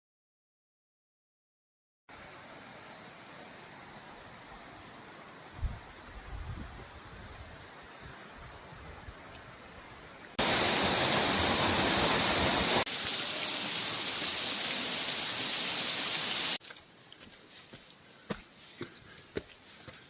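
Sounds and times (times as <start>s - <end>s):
waterfall rushing water: 10.4s - 16.6s.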